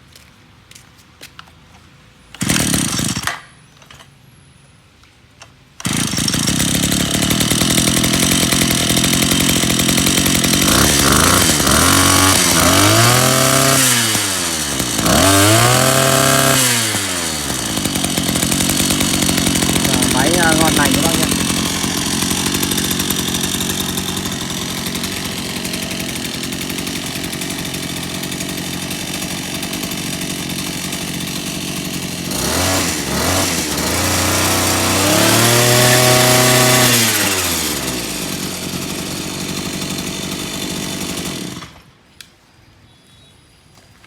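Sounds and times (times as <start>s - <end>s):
brush cutter engine idling and revving: 2.3s - 3.5s, 5.8s - 41.9s.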